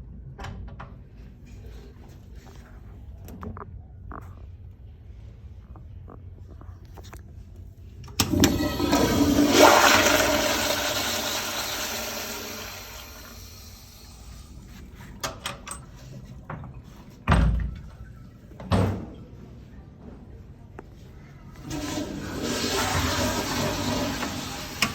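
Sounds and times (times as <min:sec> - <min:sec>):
toilet flushing: 0:08.2 - 0:14.6, 0:21.6 - 0:24.9.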